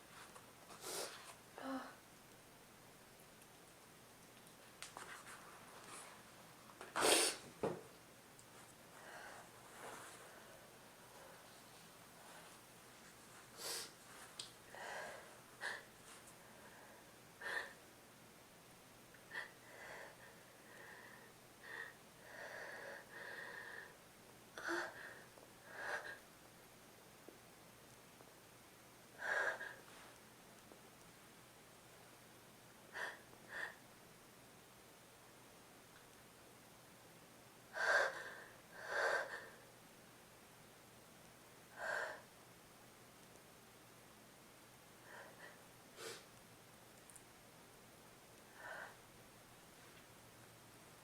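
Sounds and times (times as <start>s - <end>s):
person breathing: 8.9s - 12.5s, 14.7s - 17.8s, 19.3s - 24.0s, 45.0s - 46.3s, 48.4s - 49.0s
person gasping breaths: 14.7s - 15.9s, 19.3s - 24.0s.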